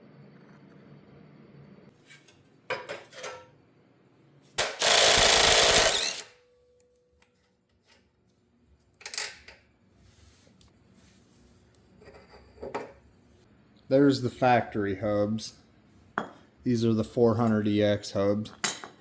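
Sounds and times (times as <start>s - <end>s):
impact wrench running: 4.6s - 6.4s.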